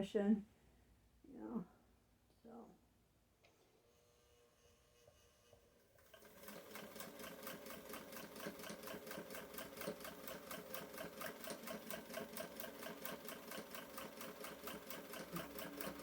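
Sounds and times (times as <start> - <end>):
sewing machine stitching: 6.0 - 16.0.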